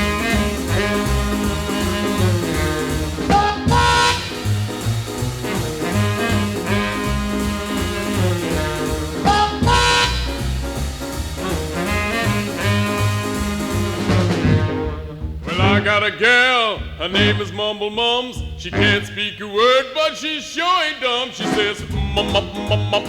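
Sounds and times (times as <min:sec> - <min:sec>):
pulsing bass beat: 0:00.0 - 0:14.9
swing jazz with horns: 0:00.0 - 0:16.2, 0:16.8 - 0:17.7, 0:18.4 - 0:19.4, 0:21.4 - 0:23.0.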